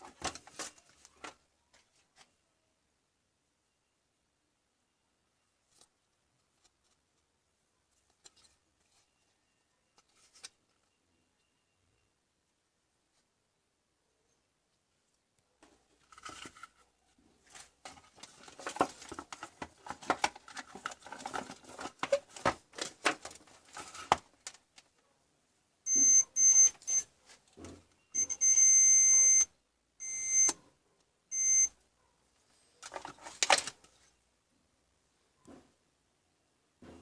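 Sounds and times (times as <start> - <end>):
small parts and tools clattering: 17.4 - 24.9, 32.7 - 34.1
multimeter continuity beeps: 25.9 - 27.1, 28.0 - 30.6, 31.3 - 31.8.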